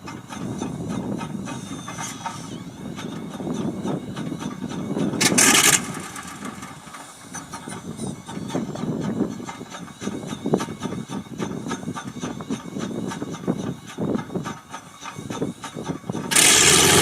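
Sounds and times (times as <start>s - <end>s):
helicopter engine running rough: 0.4s - 10.0s, 16.0s - 17.0s
engine popping: 5.2s - 7.2s, 16.2s - 17.0s
loud hissing burst: 16.3s - 17.0s.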